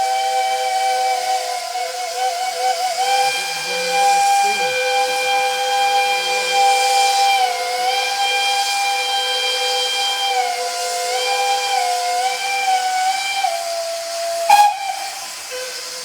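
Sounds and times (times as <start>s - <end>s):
steam hissing: 0.0s - 16.0s
steam locomotive chime whistle: 0.0s - 16.0s.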